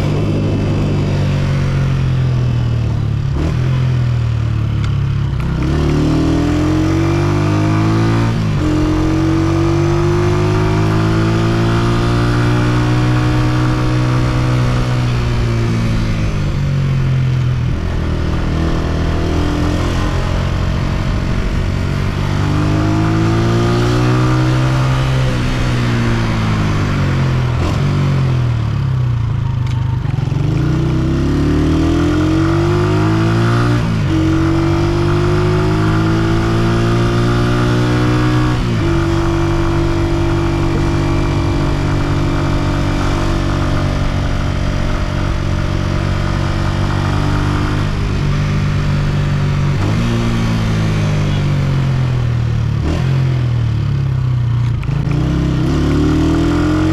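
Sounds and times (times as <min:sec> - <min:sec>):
motorcycle engine accelerating: 0:00.0 - 0:56.9.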